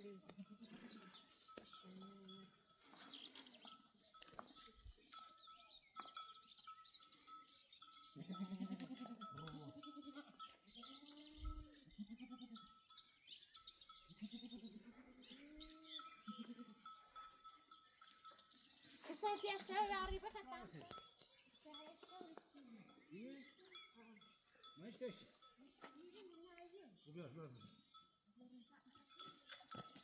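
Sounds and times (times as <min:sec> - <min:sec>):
goats and sheep bleating: 0:00.0 - 0:03.2, 0:08.1 - 0:12.8, 0:14.1 - 0:17.2.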